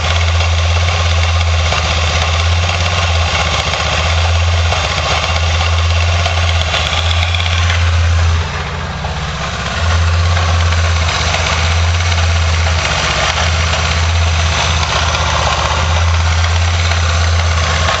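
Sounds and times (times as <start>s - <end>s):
motorcycle engine idling: 0.0s - 18.0s.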